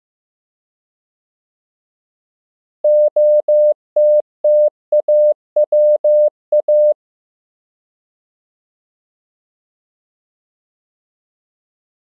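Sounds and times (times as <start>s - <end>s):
morse code beeps: 2.9s - 7.0s.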